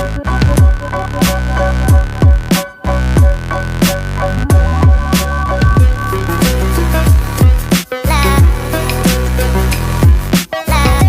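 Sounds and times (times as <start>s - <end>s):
bass notes: 0.0s - 11.0s
electronic music: 0.0s - 11.0s
deep kick drums: 0.2s - 3.6s, 4.5s - 7.7s, 8.4s - 8.6s.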